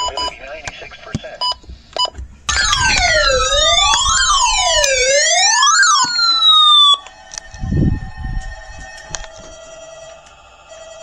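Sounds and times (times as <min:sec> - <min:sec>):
faint steady tones: 0:00.0 - 0:11.0
electronic siren wailing: 0:02.5 - 0:10.2
falling tones: 0:02.5 - 0:11.0.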